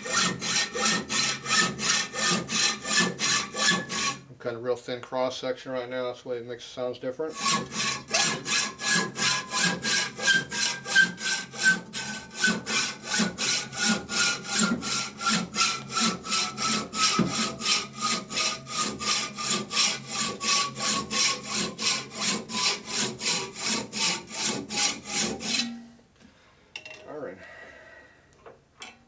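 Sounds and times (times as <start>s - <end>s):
hacksaw cutting metal: 0.0s - 4.2s, 7.3s - 25.9s.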